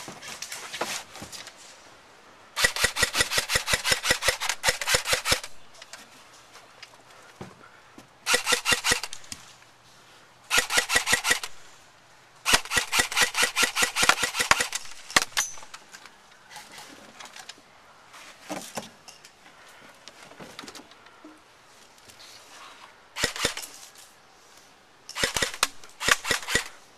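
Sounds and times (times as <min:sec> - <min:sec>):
airsoft guns firing full auto: 0:02.6 - 0:05.6, 0:08.3 - 0:09.2, 0:10.5 - 0:11.6, 0:12.4 - 0:15.6, 0:23.2 - 0:23.8, 0:25.1 - 0:26.8.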